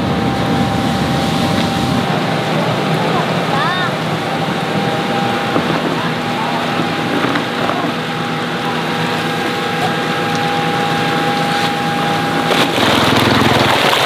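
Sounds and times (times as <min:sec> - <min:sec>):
loud rush of noise: 0:00.0 - 0:14.0
small engine running: 0:03.0 - 0:14.0.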